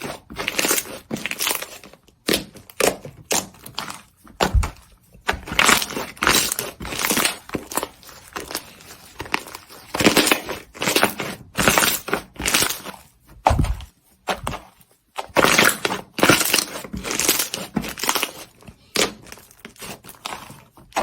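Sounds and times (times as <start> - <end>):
slime squeezed crackling: 15.2 - 21.0.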